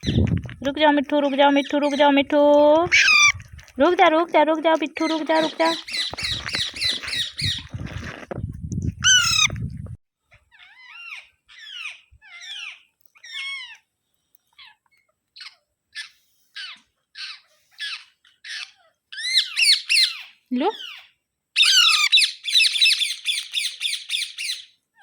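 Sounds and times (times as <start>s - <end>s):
parakeet squawking: 2.9s - 3.4s, 5.0s - 7.7s, 9.0s - 9.6s, 10.5s - 13.8s, 15.4s - 24.7s.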